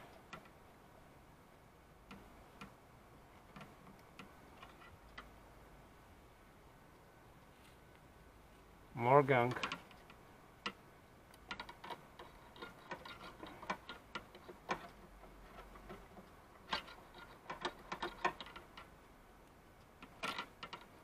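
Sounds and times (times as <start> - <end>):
wire and pliers clicking and scraping: 2.0 - 5.4, 9.4 - 21.0.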